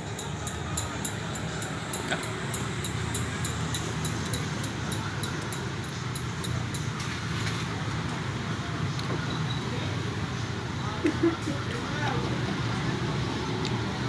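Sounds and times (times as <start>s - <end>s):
fast high ticking: 0.0s - 6.8s
low traffic rumble: 0.0s - 14.0s.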